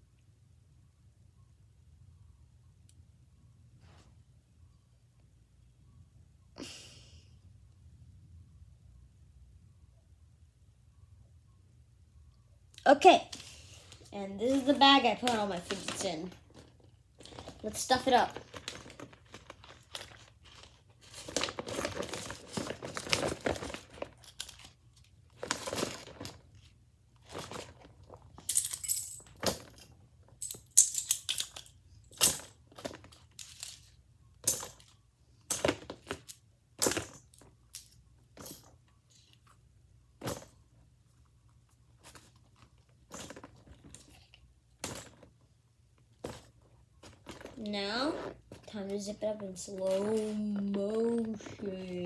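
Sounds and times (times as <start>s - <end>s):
bag rustling: 13.6s - 24.7s, 25.4s - 26.6s, 27.3s - 28.4s, 42.0s - 44.0s, 46.2s - 52.0s
hard toys clattering: 14.4s - 24.7s, 46.2s - 52.0s.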